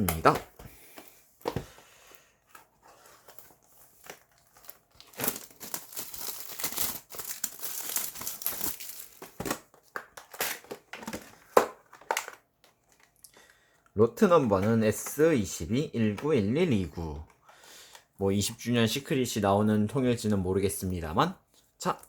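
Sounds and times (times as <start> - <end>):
plastic wrapping crinkling and tearing: 3.2 - 10.8.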